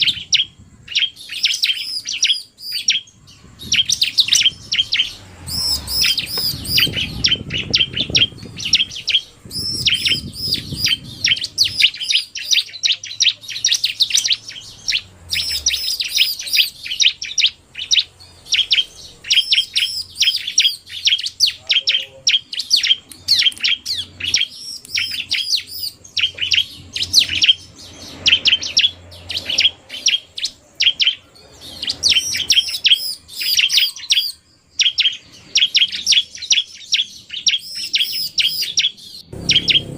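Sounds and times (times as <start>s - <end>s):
birds chirping: 0.0s - 39.9s
low rumble: 3.1s - 11.9s, 39.2s - 39.9s.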